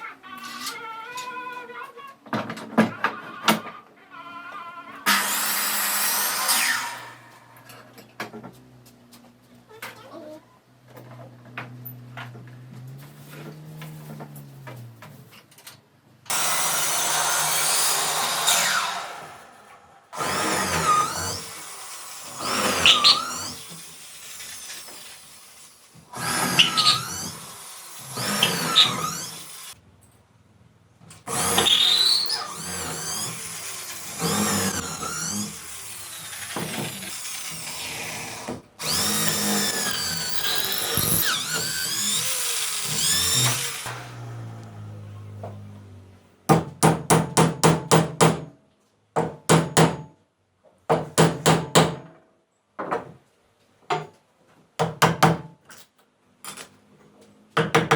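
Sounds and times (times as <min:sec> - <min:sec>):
electric drill running: 0:20.2 - 0:29.8, 0:31.3 - 0:44.4.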